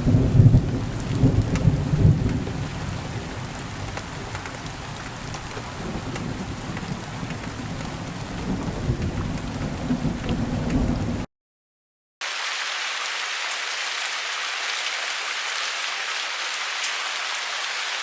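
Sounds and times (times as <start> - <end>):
thunder rumble: 0.0 - 3.9, 5.4 - 11.3
rain drop ticks: 0.0 - 11.2
steady rainfall: 0.0 - 11.3, 12.2 - 18.0.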